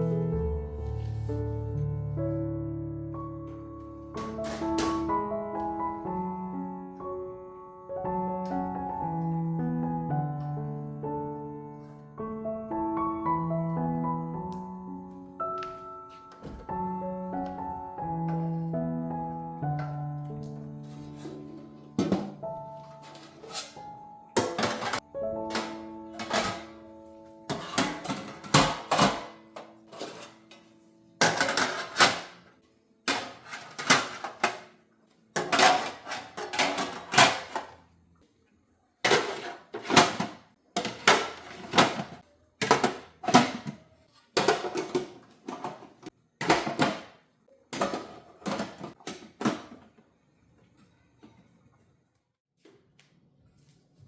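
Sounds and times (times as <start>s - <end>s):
dishes and utensils clinking: 24.4s - 26.8s, 27.5s - 32.4s, 35.4s - 37.7s, 39.0s - 43.7s.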